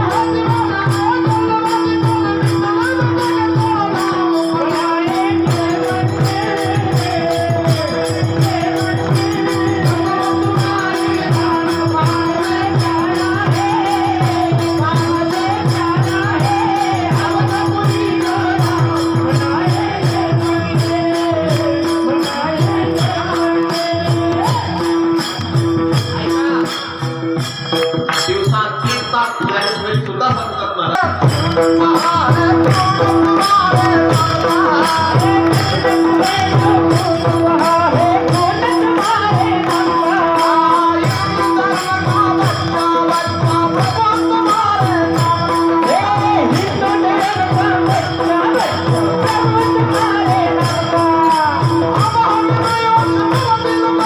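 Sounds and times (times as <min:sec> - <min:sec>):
jingling hand cymbals: 0:00.0 - 0:54.0.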